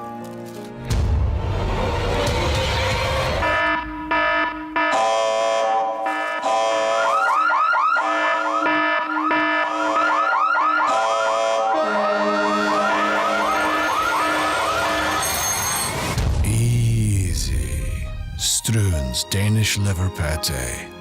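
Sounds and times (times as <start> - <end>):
electronic alarm siren: 3.4 - 16.1.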